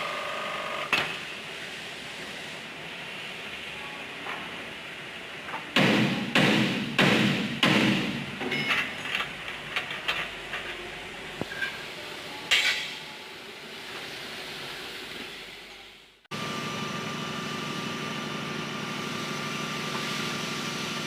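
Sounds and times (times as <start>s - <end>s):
punch machine knocks: 5.8s - 8.7s.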